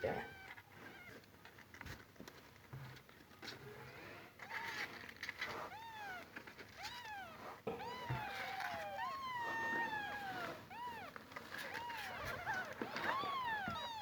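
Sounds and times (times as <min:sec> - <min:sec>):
kittens mewing: 0:00.0 - 0:01.3, 0:05.4 - 0:14.0.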